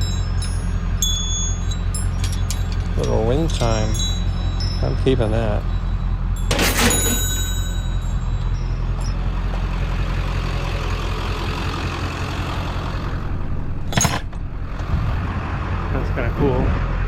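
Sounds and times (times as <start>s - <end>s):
metal wind chime: 0.0s - 9.3s
vehicle engine idling: 0.0s - 17.0s.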